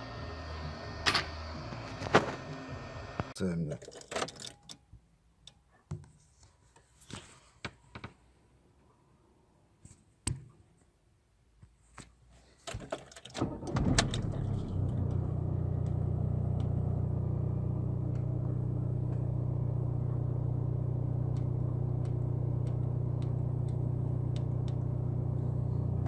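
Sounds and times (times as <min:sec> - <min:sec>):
car engine starting and idling: 0:00.0 - 0:03.4, 0:13.2 - 0:26.0.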